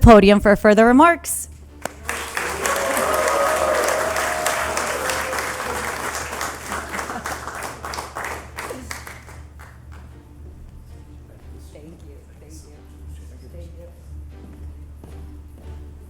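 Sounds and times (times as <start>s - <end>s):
audience applauding: 1.8s - 10.1s.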